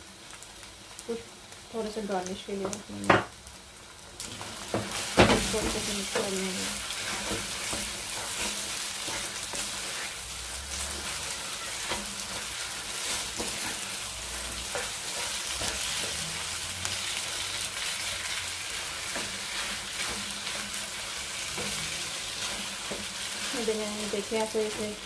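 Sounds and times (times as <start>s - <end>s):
food sizzling in oil: 0.0s - 25.0s
spoon scraping a pan: 4.7s - 16.6s.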